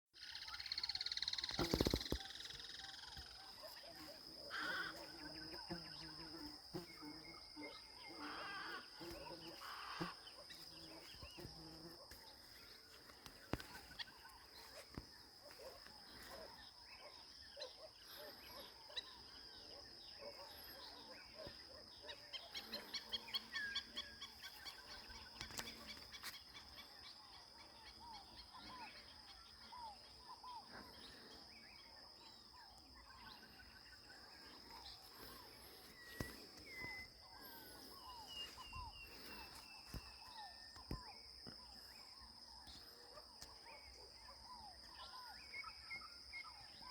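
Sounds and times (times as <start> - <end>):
high-pitched insect drone: 0.2 - 3.4, 4.4 - 12.6
short animal calls: 4.4 - 5.3, 7.6 - 10.2.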